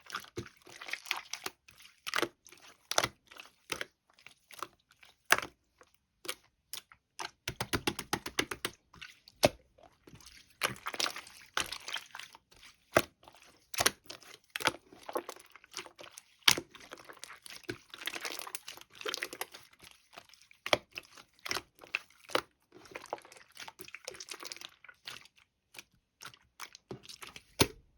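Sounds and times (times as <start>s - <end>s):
crinkling and crunching: 9.0s - 27.9s.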